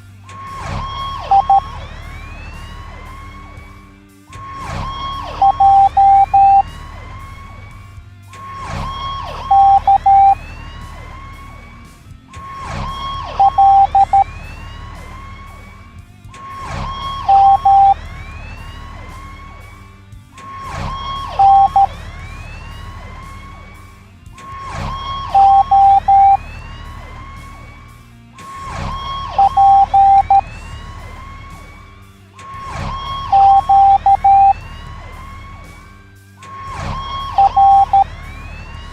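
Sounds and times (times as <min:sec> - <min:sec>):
low steady drone: 0:00.0 - 0:38.9
siren-like sound effect: 0:00.0 - 0:38.9
morse code beeps: 0:00.3 - 0:02.3, 0:04.4 - 0:06.8, 0:08.4 - 0:10.5, 0:12.4 - 0:14.4, 0:16.5 - 0:18.2, 0:20.4 - 0:22.3, 0:24.4 - 0:26.6, 0:28.5 - 0:30.5, 0:32.5 - 0:34.6, 0:36.5 - 0:38.2.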